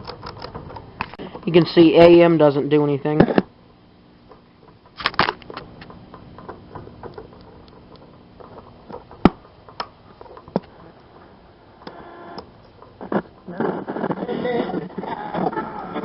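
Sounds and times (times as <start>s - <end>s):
radio clicks and crackle: 3.1s - 3.5s, 4.2s - 16.0s.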